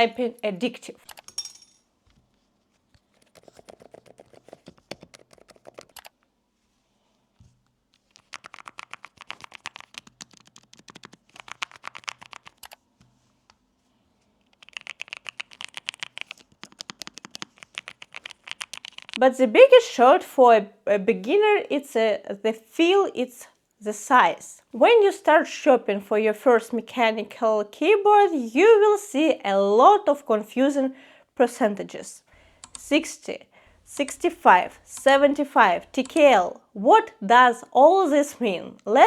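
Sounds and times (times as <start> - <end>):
mechanical keyboard typing: 3.2 - 6.1, 8.1 - 12.8, 14.5 - 19.2, 32.6 - 32.9.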